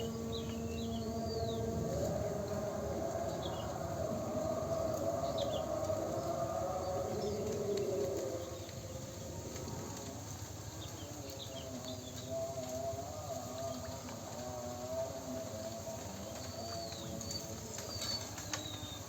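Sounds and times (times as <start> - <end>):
steady wavering hum: 0.0 - 19.0
bird chirps: 16.0 - 19.0.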